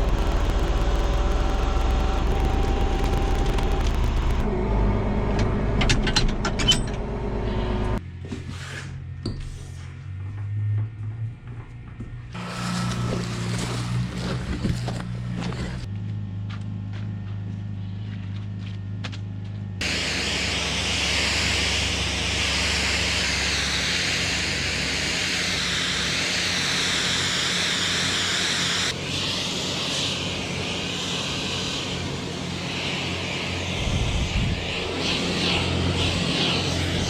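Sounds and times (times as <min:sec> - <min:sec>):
engine running: 0:00.0 - 0:08.3, 0:09.1 - 0:37.0
water spray hissing: 0:19.8 - 0:37.0.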